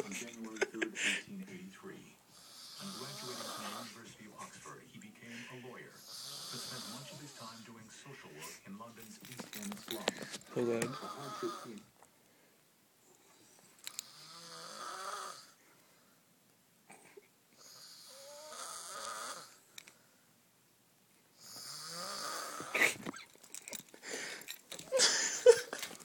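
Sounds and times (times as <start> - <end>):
loud snoring: 2.3 - 4.0, 6.0 - 7.3, 10.8 - 11.8, 14.0 - 15.6, 17.6 - 19.6, 21.4 - 22.8.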